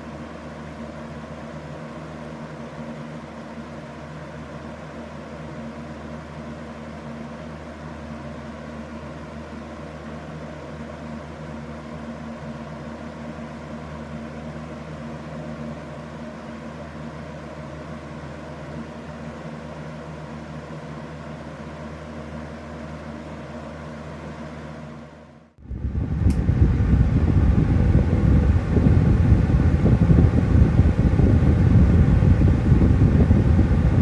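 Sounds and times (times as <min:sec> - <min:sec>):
box fan running: 0:00.0 - 0:34.0
loud low rumble: 0:25.6 - 0:34.0.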